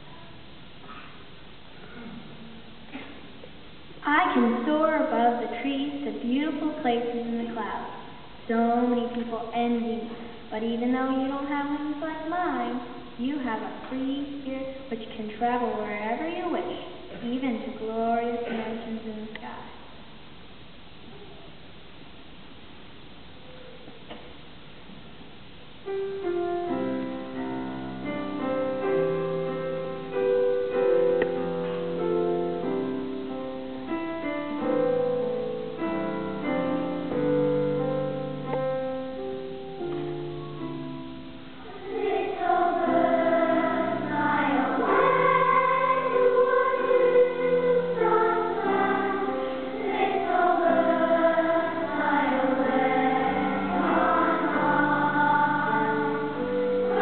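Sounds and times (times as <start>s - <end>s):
choir singing a hymn: 41.6s - 57.0s.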